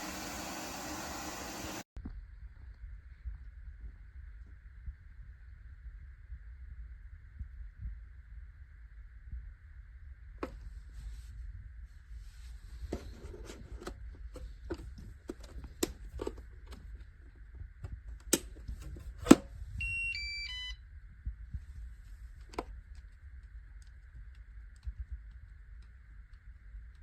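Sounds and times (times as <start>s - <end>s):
electronic beep chime: 19.8s - 20.8s.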